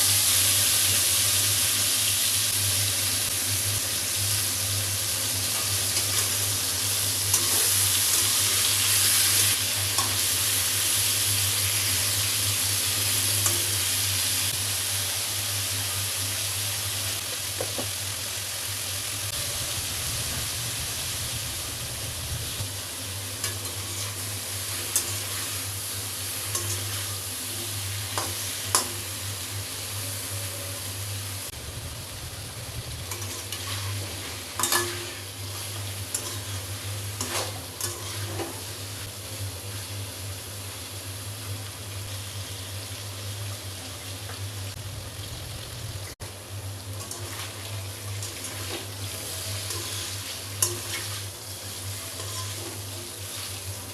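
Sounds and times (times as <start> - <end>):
vegetables sizzling in oil: 0.0 - 53.9
steady low hum: 31.2 - 39.2.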